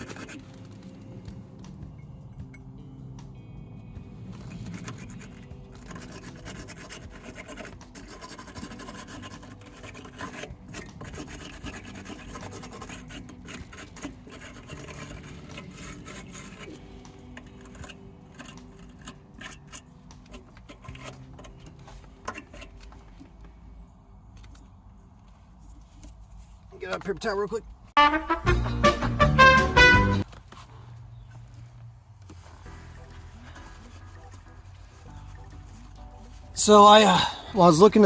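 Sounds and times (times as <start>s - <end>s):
scrubbing battery terminals: 0.0s - 2.8s, 4.2s - 23.7s.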